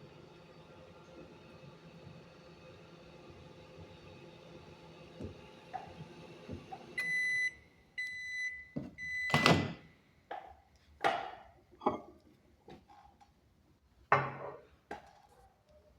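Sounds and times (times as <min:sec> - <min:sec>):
microwave running hum: 0:00.0 - 0:10.1
microwave oven beeping: 0:06.7 - 0:09.9.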